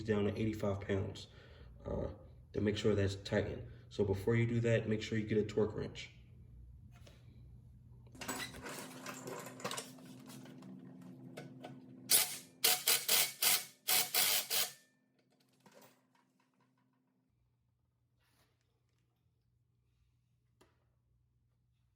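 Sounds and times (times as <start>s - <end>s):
impact wrench rattling: 12.1s - 14.8s.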